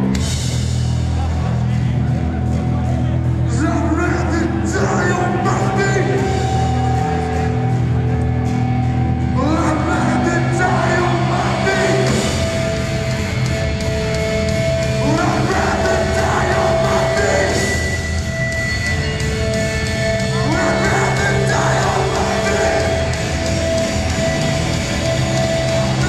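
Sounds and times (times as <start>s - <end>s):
bass guitar: 0.0s - 26.0s
distorted electric guitars: 0.0s - 26.0s
drums: 0.0s - 26.0s
shouted vocals: 9.4s - 12.2s, 15.0s - 17.9s, 20.3s - 23.4s.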